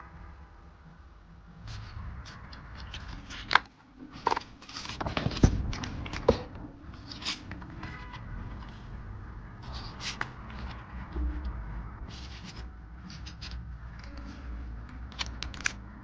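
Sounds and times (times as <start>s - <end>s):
paper and plastic rustling: 1.7s - 8.9s.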